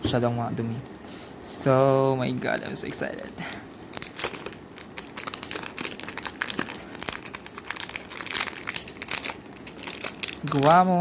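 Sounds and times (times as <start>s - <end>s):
plastic packaging crinkling: 2.2s - 11.0s.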